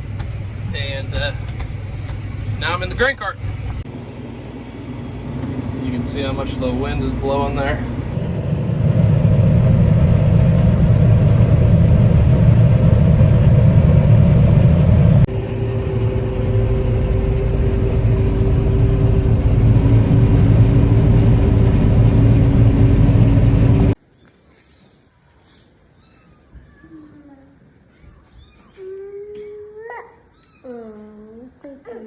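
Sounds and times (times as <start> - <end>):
engine humming: 0.0 - 24.0
harvest machinery rumbling: 0.0 - 24.0.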